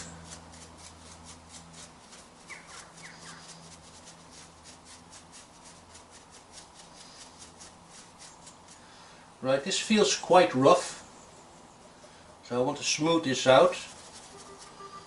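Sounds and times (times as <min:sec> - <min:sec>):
low hum: 0:00.0 - 0:09.5
brush sweeping wood dust: 0:00.0 - 0:10.9, 0:12.8 - 0:15.0.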